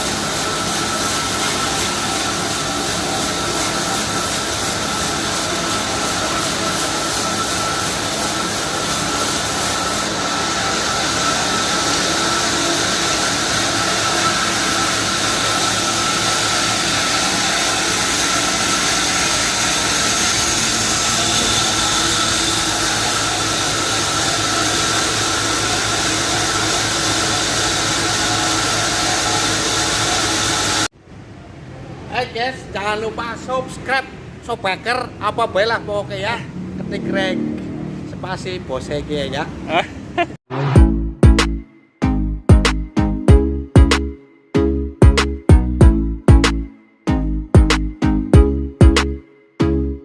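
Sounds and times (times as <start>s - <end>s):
high whine: 0.0s - 30.9s
sawmill sawing a log: 0.0s - 30.9s.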